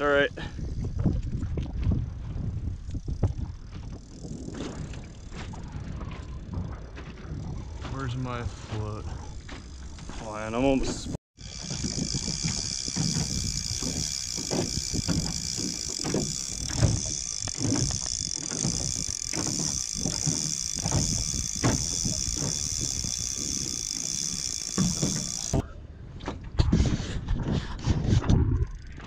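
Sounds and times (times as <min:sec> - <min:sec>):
fishing reel clicks and rattles: 0:11.4 - 0:25.6.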